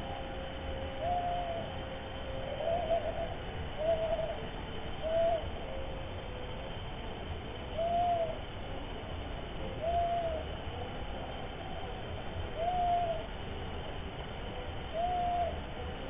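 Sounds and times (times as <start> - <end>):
owl hooting: 0.0 - 6.5, 7.7 - 8.5, 9.6 - 13.4, 14.8 - 16.0
steady microphone hiss: 0.0 - 16.0.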